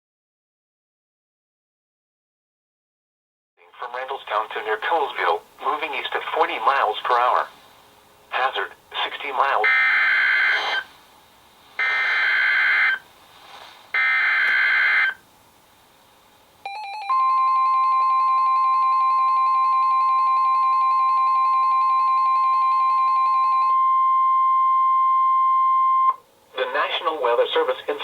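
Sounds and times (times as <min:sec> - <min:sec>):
steady warning alarm tone: 0:09.5 - 0:10.9, 0:11.8 - 0:13.1, 0:14.0 - 0:15.2, 0:16.6 - 0:26.2
pulsing alarm tone: 0:09.6 - 0:10.9, 0:11.8 - 0:13.0, 0:14.0 - 0:15.2, 0:16.7 - 0:26.2.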